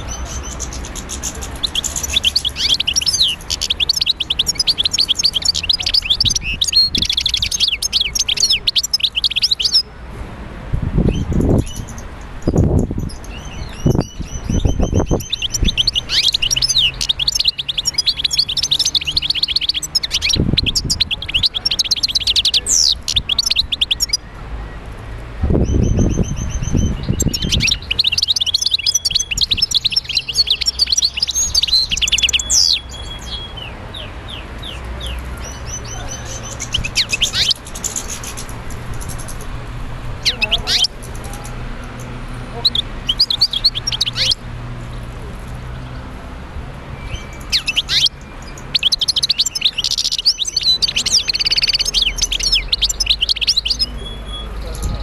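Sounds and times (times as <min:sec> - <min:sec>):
bird singing high trills: 0:00.0 - 0:09.9, 0:11.1 - 0:24.3, 0:25.6 - 0:33.7, 0:35.0 - 0:38.4, 0:47.0 - 0:55.0.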